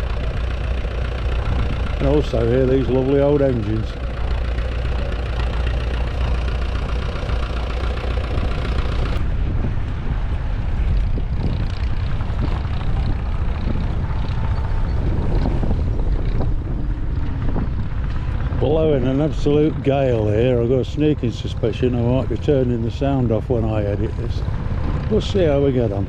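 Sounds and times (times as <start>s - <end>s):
engines running: 0.0s - 26.0s
wind buffeting microphone: 0.0s - 26.0s.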